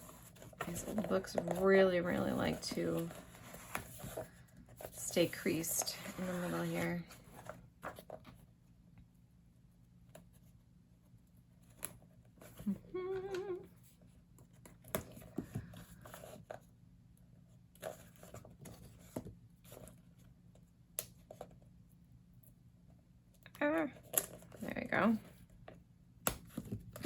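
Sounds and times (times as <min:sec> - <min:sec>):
paper rustling and page clicks: 0:00.0 - 0:08.4
person humming: 0:12.6 - 0:13.7.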